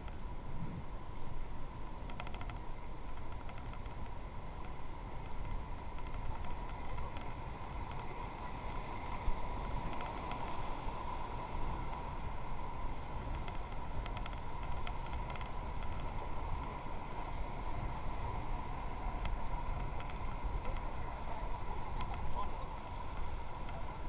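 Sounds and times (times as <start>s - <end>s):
faint clicks and knocks: 0.0s - 0.3s, 1.9s - 10.8s, 13.1s - 17.3s, 18.1s - 24.0s
wind buffeting microphone: 0.0s - 24.0s.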